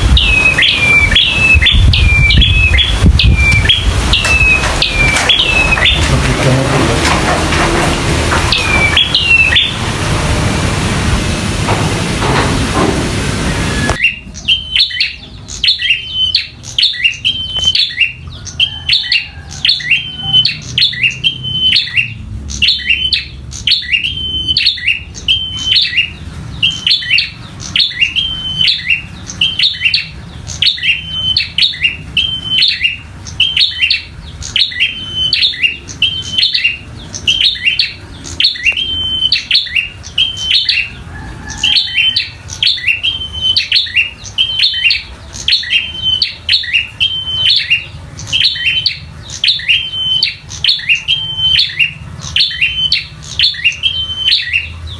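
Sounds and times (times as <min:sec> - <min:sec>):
bird chirping sharply: 0:00.0 - 0:10.9, 0:12.4 - 0:54.9
steady rushing noise: 0:00.0 - 0:14.0.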